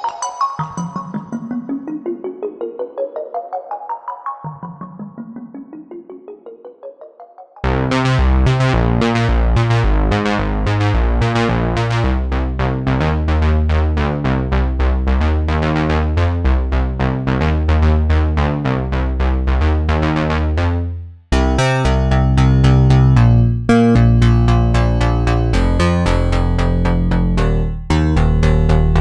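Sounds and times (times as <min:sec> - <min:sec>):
fuller synthesizer sound: 0:00.6 - 0:29.0
synthesizer bass line: 0:07.6 - 0:29.0.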